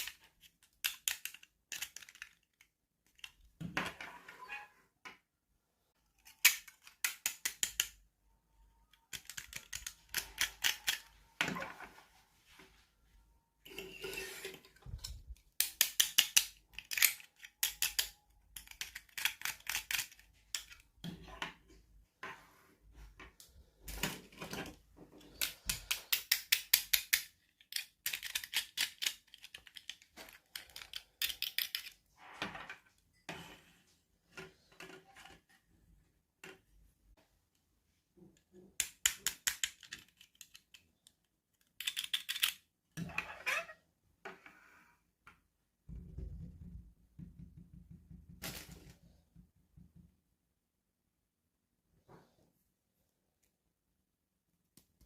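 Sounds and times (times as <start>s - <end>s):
toy packaging clicking and crackling: 0.0s - 3.4s, 6.2s - 8.0s, 8.8s - 11.2s, 15.0s - 21.0s, 25.2s - 32.1s, 38.8s - 42.7s.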